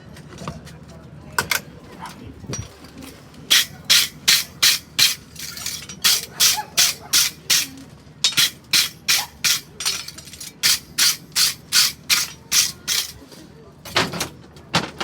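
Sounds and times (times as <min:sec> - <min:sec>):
hand tool scraping metal: 0:03.5 - 0:13.2.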